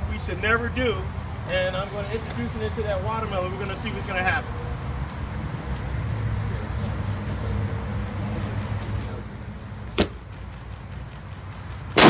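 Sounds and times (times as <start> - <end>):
sharp crack: 9.9 - 12.0.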